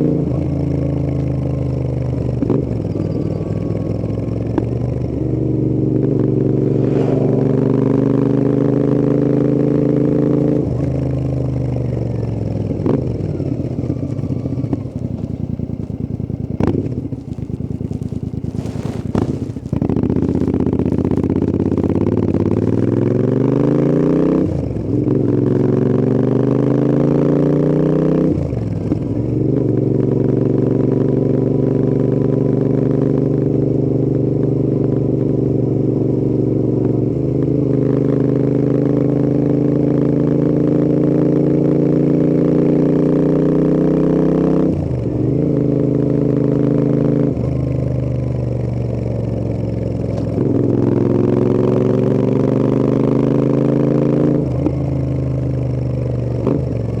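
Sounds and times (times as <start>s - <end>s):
motorcycle engine pulling under load: 1.6s - 27.2s, 43.7s - 57.0s.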